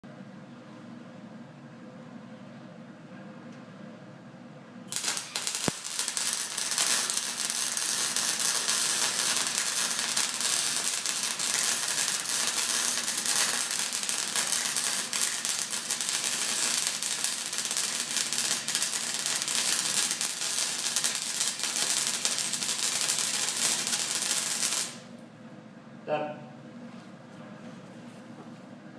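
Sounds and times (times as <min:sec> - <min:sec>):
welding arc crackling and sizzling: 0:04.9 - 0:25.2.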